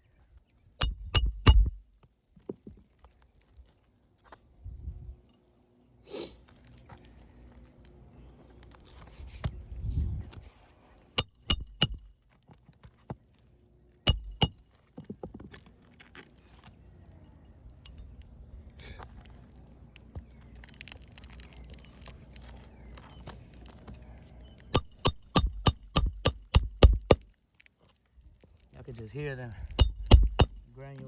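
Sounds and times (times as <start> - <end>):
hammer striking metal: 0.8 - 1.8, 11.2 - 12.1, 14.1 - 14.6, 24.8 - 27.3, 29.8 - 30.7.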